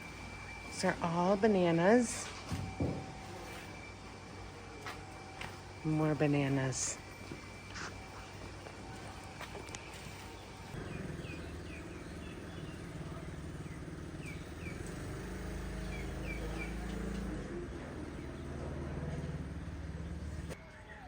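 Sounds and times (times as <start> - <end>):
small birds chirping: 9.4 - 17.3.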